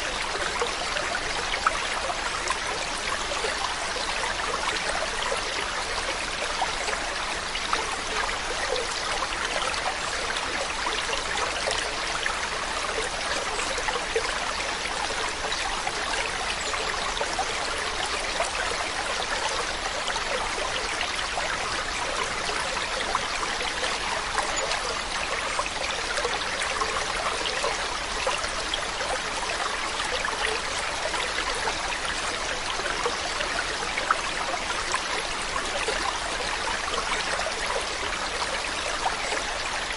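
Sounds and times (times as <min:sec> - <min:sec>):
stream running over rocks: 0:00.0 - 0:39.9.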